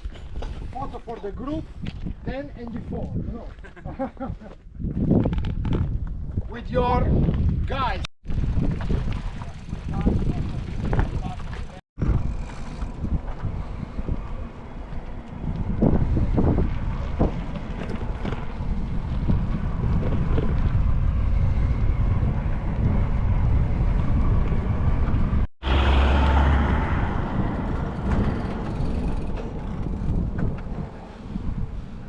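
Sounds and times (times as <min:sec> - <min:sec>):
wind buffeting microphone: 0:00.0 - 0:32.0.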